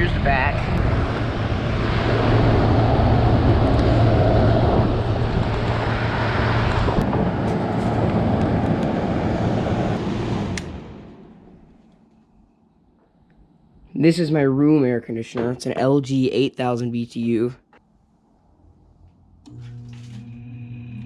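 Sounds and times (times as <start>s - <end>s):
low motor hum: 0.0s - 11.8s, 18.4s - 21.0s
air conditioner rushing air: 0.0s - 11.9s.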